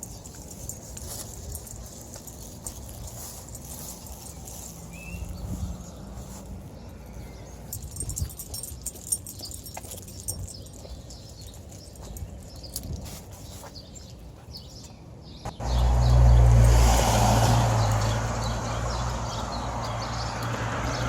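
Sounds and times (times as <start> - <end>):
footsteps: 0.0 - 15.6
bird chirp: 0.0 - 16.5.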